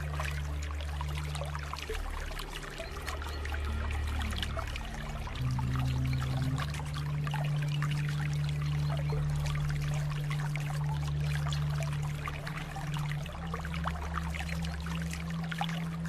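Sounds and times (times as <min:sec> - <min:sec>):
low drone of held notes: 0:00.0 - 0:16.0
water flowing and trickling: 0:00.0 - 0:16.0.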